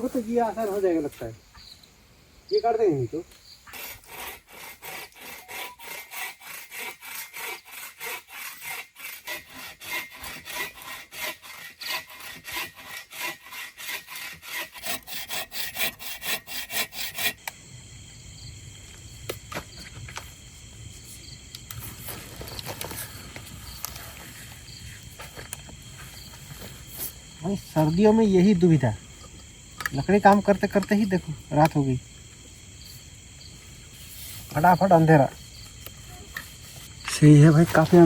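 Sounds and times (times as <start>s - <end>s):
crickets chirping: 0.0s - 38.0s
saw cutting through branch: 3.7s - 17.5s.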